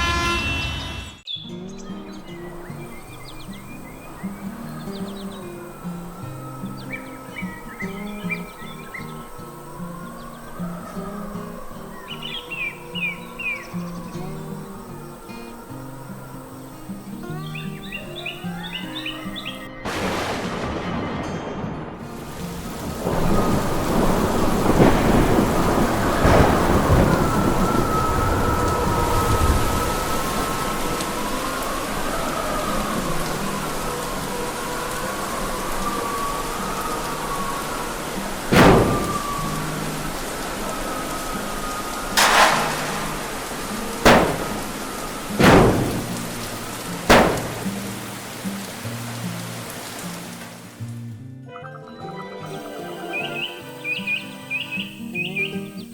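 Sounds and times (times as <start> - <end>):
heavy rain: 1.8 - 51.2, 52.4 - 55.9
thunder rumbling: 19.8 - 50.9
loud sudden cracks: 19.9 - 29.9, 38.4 - 40.8, 42.0 - 49.7.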